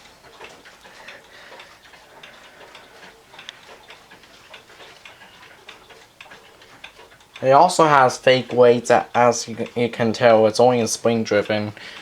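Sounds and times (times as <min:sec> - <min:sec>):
clock ticking: 0:00.0 - 0:12.0.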